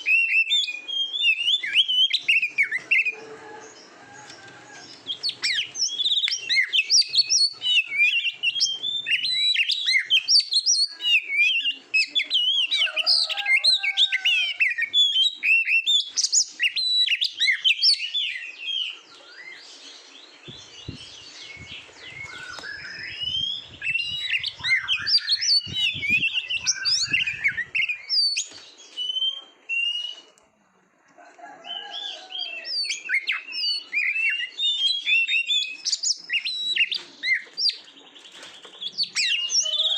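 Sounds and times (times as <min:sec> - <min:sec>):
bird singing whistles and trills: 0:00.0 - 0:03.2, 0:05.1 - 0:30.3, 0:31.8 - 0:39.9.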